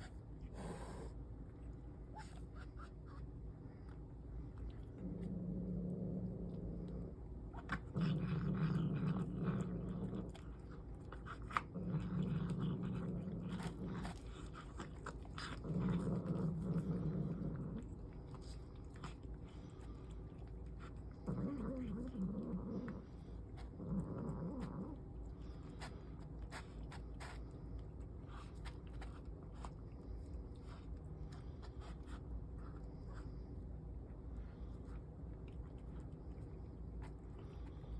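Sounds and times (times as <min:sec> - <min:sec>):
cat growling: 0:00.0 - 0:01.2, 0:04.7 - 0:33.4
cat chewing food: 0:00.0 - 0:37.9.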